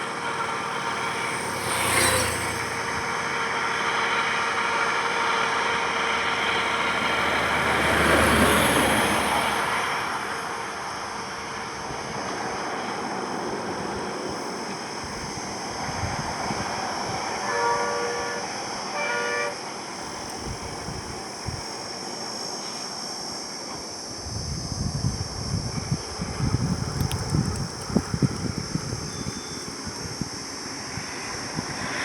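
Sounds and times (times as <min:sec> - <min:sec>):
highway traffic noise: 0:00.0 - 0:32.0
low gusty rumble: 0:15.0 - 0:17.3, 0:24.2 - 0:31.9
vehicle horn honking: 0:17.4 - 0:19.6.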